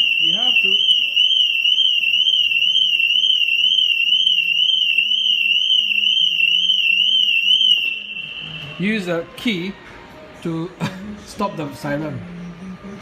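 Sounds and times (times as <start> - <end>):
warbling car alarm siren: 0.0 - 8.8.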